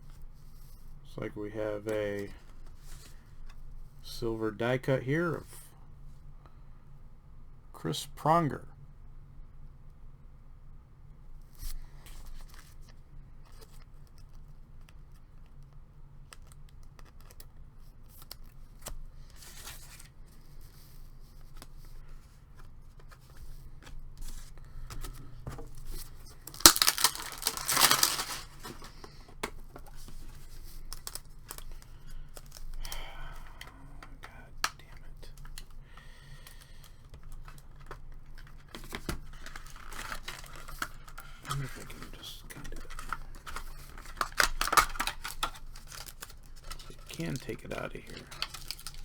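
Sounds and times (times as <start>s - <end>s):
packaging and cards rustling: 16.4s - 49.0s
wrapper being torn open: 25.9s - 29.0s, 30.8s - 32.8s, 39.3s - 49.0s.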